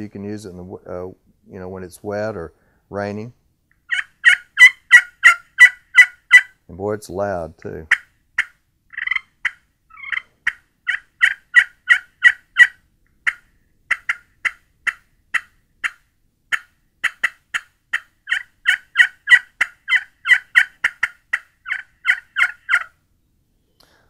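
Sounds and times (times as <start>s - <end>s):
turkey call yelps: 3.8s - 6.6s, 7.9s - 23.0s.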